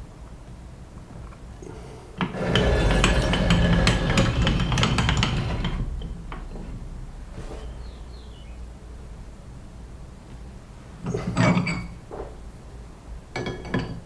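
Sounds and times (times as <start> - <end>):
steel scraping with clicks: 2.2 - 6.4
metallic ring: 2.4 - 8.9.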